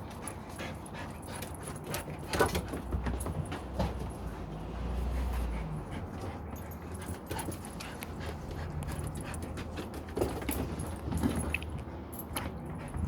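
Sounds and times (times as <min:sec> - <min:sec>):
dog panting: 0:00.0 - 0:02.9, 0:04.4 - 0:10.6.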